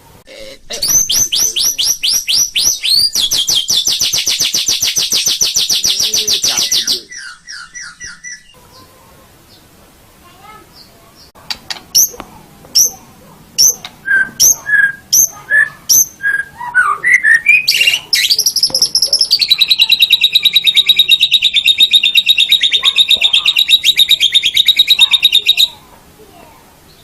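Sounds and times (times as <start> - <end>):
bird singing whistled notes and trills: 0.7 - 8.6, 13.6 - 25.8.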